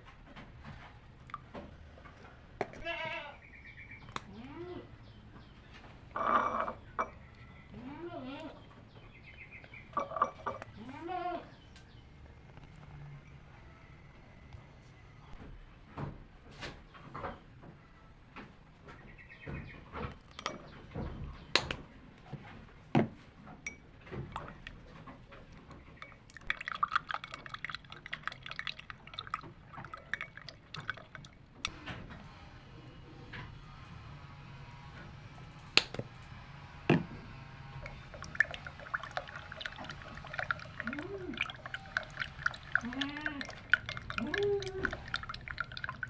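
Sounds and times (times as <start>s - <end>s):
liquid dripping and bubbling: 1.2s - 1.8s, 23.6s - 31.8s, 37.8s - 46.0s
low steady hum: 32.5s - 46.0s.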